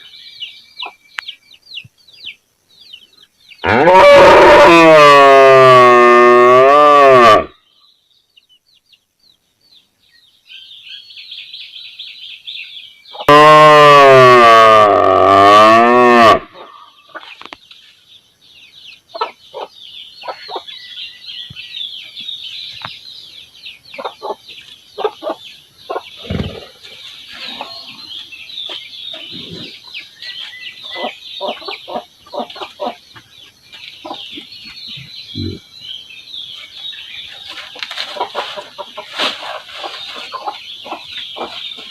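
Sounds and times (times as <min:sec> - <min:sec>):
cow mooing: 0:13.3 - 0:16.5
chickens clucking: 0:16.6 - 0:17.7, 0:19.1 - 0:20.7, 0:23.9 - 0:35.7, 0:36.6 - 0:41.9.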